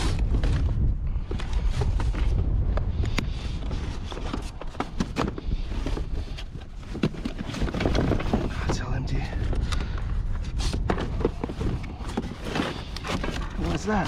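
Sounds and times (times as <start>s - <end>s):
steady low rumble: 0.0s - 7.0s, 7.7s - 14.0s
objects knocking and clattering: 6.8s - 8.8s, 10.7s - 14.0s.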